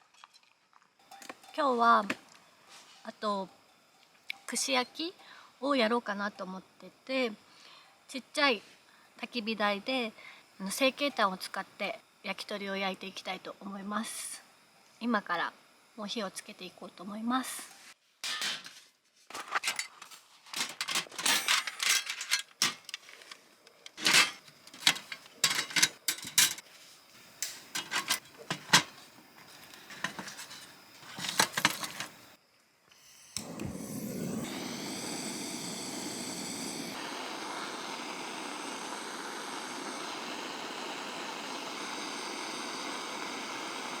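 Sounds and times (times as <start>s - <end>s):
steady hiss: 16.0s - 44.0s
metal clinks and rattles: 20.6s - 22.9s.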